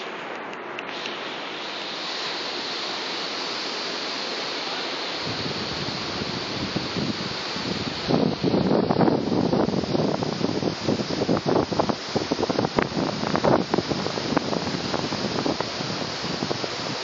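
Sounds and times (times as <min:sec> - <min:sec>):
thunderstorm rushing noise: 0:05.2 - 0:17.0
wind buffeting microphone: 0:05.2 - 0:17.0.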